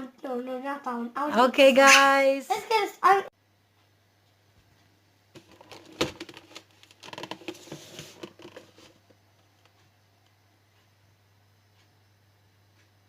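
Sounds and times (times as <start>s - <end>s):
handling clicks and rustles: 5.4s - 9.8s.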